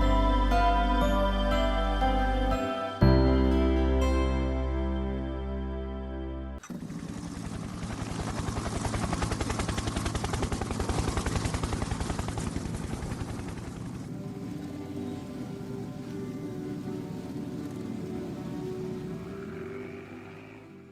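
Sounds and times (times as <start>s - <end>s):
background music: 0.0s - 6.6s, 13.8s - 20.9s.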